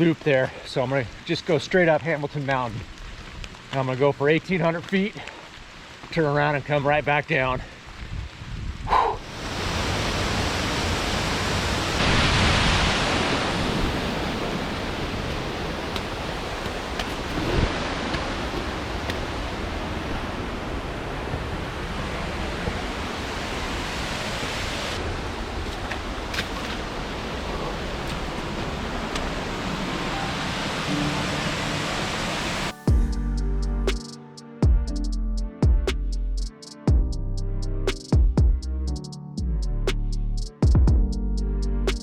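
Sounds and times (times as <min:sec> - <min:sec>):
heavy rain: 0:00.0 - 0:33.1.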